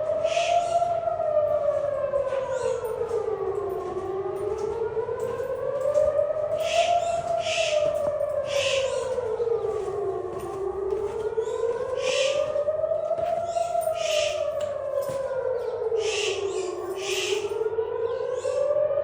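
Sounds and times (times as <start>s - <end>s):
air raid siren wailing: 0.0s - 19.0s
short high bird calls: 0.2s - 0.7s, 6.6s - 7.8s, 8.5s - 9.1s, 12.0s - 12.4s, 13.5s - 14.4s, 16.0s - 17.4s.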